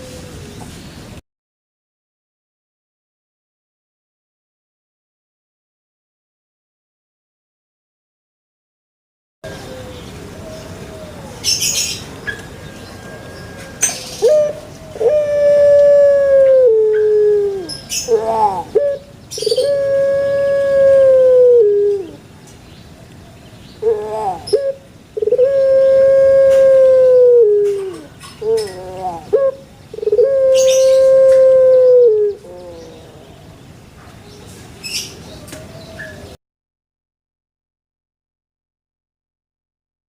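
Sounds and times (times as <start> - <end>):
dove cooing: 9.5 - 22.3, 23.8 - 33.6.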